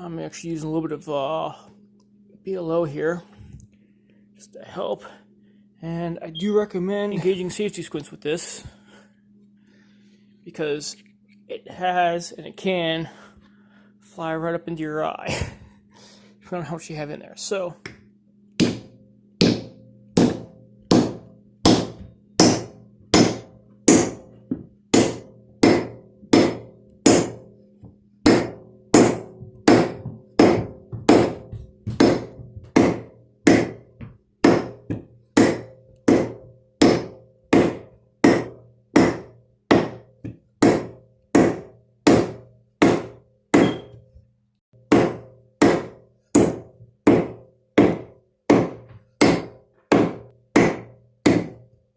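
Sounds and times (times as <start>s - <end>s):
hammer blows on wooden wedge: 28.2s - 44.1s.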